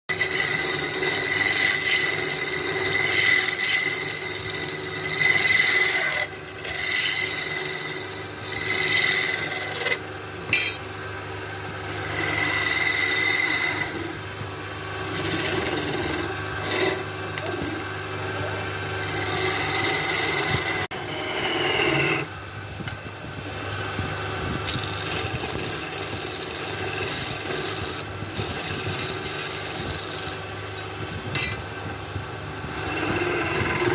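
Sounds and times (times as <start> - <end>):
tool scraping wood: 0.1 - 10.7, 11.9 - 17.9, 19.0 - 22.3, 24.6 - 30.4, 32.6 - 33.9
steady low hum: 0.1 - 33.9.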